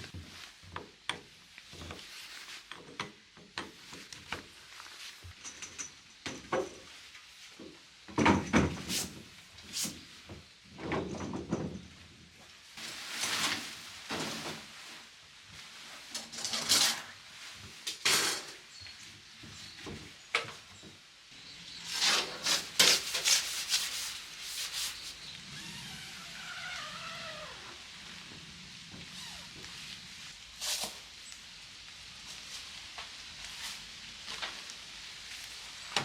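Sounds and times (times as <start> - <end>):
objects rubbing and scraping: 21.4 - 31.4.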